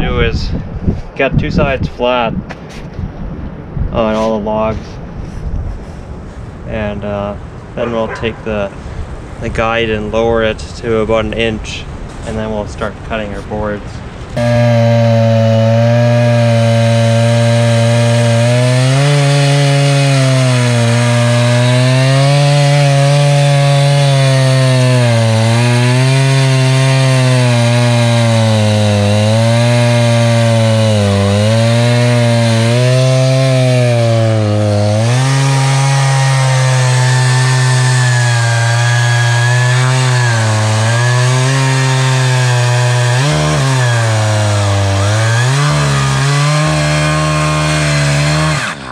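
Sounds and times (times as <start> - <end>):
chainsaw cutting through log: 14.4 - 48.9.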